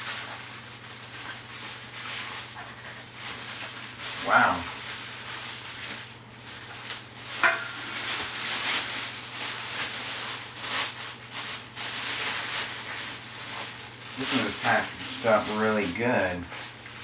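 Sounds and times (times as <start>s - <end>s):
plastic wrap crinkling: 0.0s - 17.0s.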